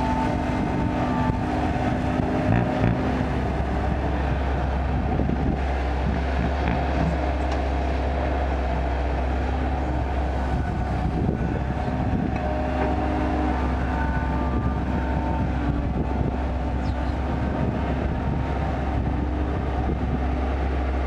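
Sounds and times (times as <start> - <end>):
excavator diesel engine running: 0.0 - 21.0.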